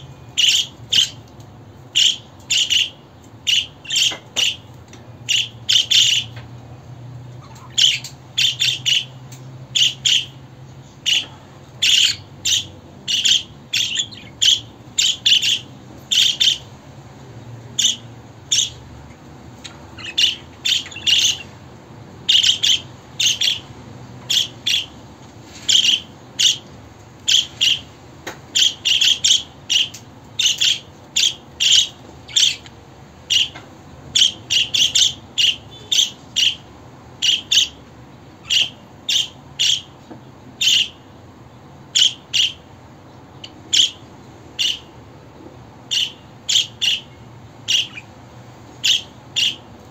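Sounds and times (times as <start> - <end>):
budgerigars chirping: 0.0 - 1.2, 1.9 - 4.6, 5.3 - 6.4, 7.4 - 16.7, 17.8 - 21.6, 22.3 - 25.0, 25.7 - 26.6, 27.3 - 27.9, 28.5 - 37.8, 38.4 - 39.9, 40.6 - 41.0, 41.9 - 42.6, 43.4 - 44.0, 44.6 - 44.9, 45.9 - 48.1, 48.8 - 49.7.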